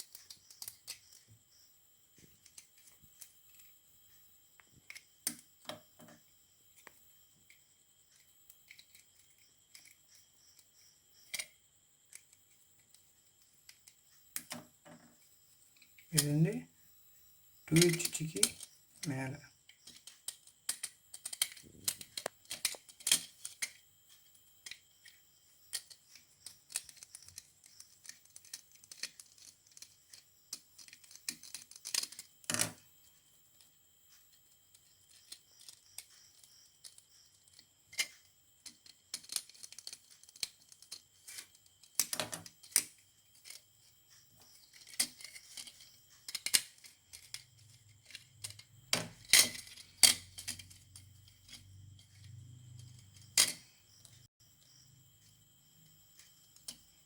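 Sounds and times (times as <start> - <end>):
hand tools clicking and snipping: 17.7 - 19.2, 19.8 - 23.8, 25.7 - 32.7, 44.7 - 51.6.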